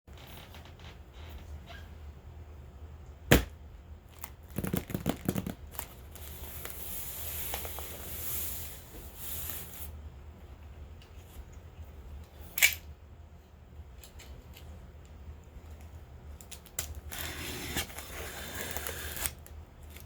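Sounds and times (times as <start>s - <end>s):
packaging clicking and crinkling: 4.1s - 6.8s
packaging rustling: 4.1s - 8.1s, 16.6s - 20.0s.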